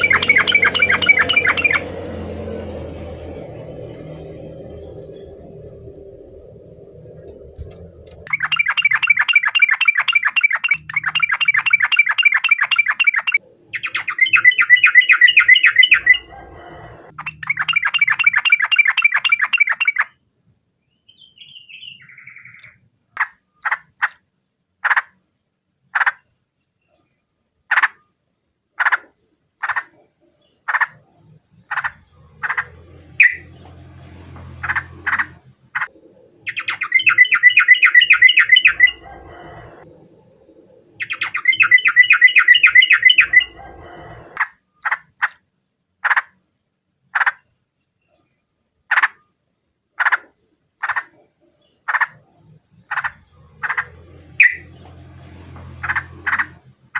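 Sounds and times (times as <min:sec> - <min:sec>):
bird rattling trills: 0:00.0 - 0:02.0, 0:07.1 - 0:16.3, 0:31.7 - 0:39.9, 0:52.9 - 0:56.9.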